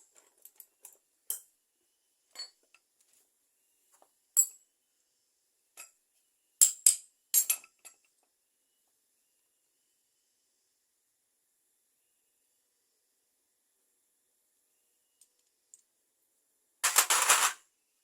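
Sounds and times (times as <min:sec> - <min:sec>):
small metal parts clinking: 0:16.8 - 0:17.6.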